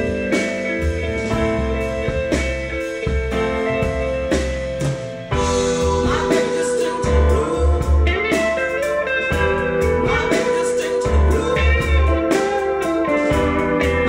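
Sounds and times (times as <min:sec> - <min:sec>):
instrumental blues music: 0:00.0 - 0:14.0.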